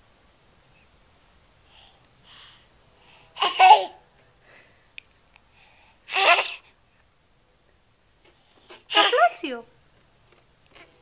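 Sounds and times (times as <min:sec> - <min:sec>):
small child sneezing: 0:08.9 - 0:09.4.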